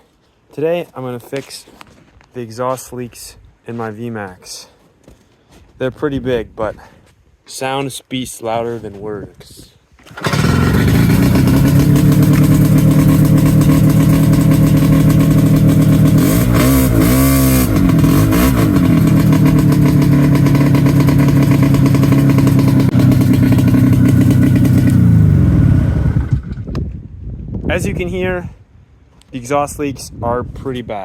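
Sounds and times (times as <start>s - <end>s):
snowmobile engine running: 10.2s - 26.6s.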